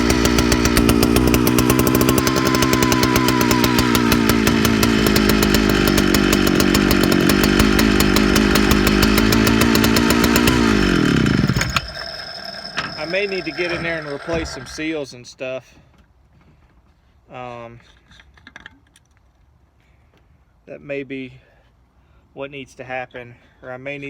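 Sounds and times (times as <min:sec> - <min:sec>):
chainsaw engine running: 0:00.0 - 0:14.9.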